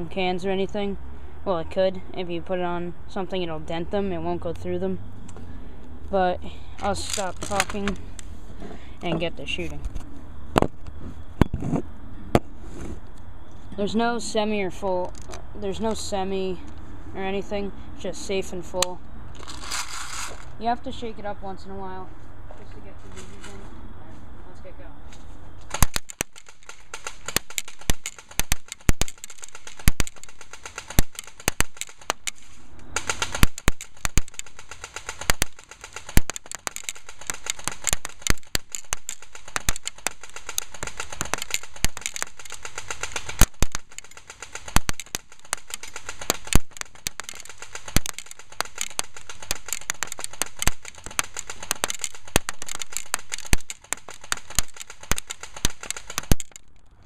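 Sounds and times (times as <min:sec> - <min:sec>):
sharp cracks: 0:06.8 - 0:08.3, 0:18.7 - 0:20.6, 0:25.6 - 0:57.0
airsoft gun firing full-auto: 0:25.7 - 0:56.6.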